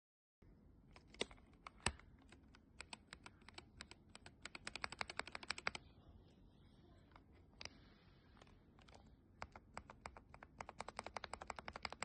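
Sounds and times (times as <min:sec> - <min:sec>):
mechanical keyboard typing: 0:00.9 - 0:05.8, 0:08.4 - 0:12.0.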